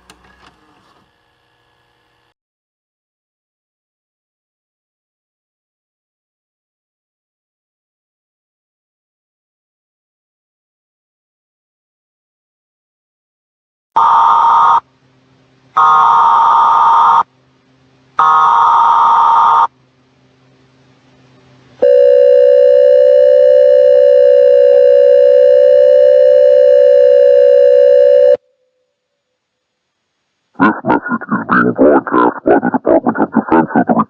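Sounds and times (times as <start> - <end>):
long steady attention tone: 14.0 - 29.0
buzzy header bursts: 30.6 - 34.0.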